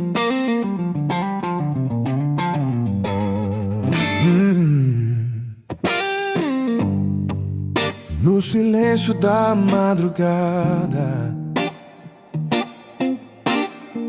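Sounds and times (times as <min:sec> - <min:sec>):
blues guitar with string bends: 0:00.0 - 0:14.0
bass line: 0:08.0 - 0:09.7.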